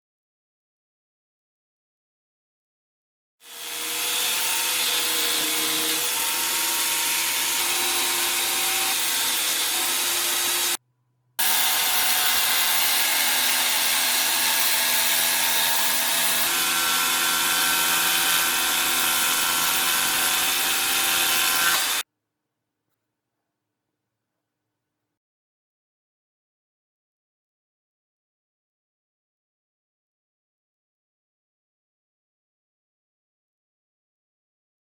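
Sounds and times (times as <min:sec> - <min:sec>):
jigsaw cutting wood: 0:03.4 - 0:10.8, 0:11.4 - 0:22.0.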